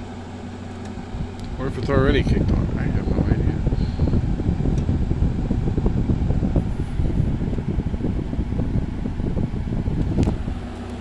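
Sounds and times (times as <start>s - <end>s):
air conditioner blower fan: 0.0s - 11.0s
air rushing across microphone: 1.1s - 11.0s
click: 10.0s - 11.0s.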